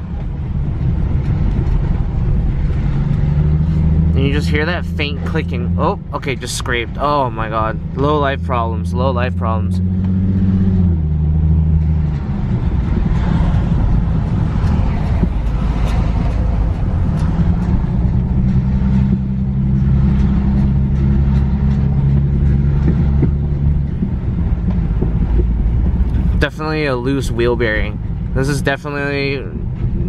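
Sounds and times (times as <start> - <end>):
car wheel droning: 0.0 - 30.0
road noise: 0.0 - 30.0.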